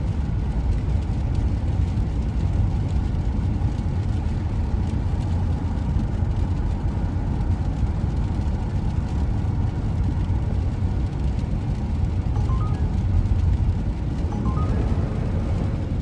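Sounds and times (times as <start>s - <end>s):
low vehicle rumble: 12.3s - 16.0s.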